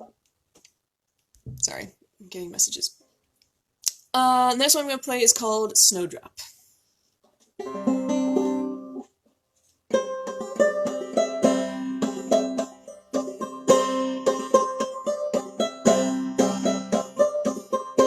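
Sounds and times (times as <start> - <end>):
banjo picking: 7.6 - 9.1, 9.9 - 18.0.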